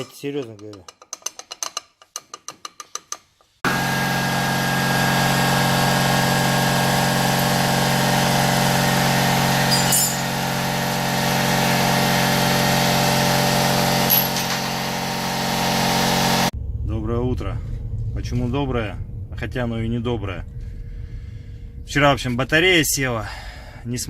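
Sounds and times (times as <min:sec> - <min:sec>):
motor-driven machine humming: 0:03.7 - 0:16.5.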